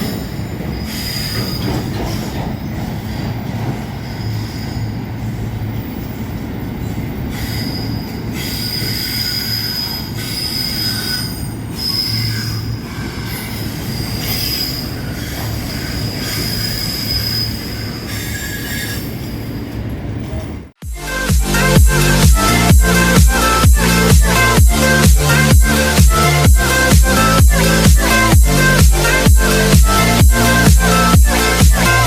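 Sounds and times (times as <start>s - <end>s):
train wheels squealing: 0.0s - 20.5s
freight train rumbling past: 0.0s - 32.0s.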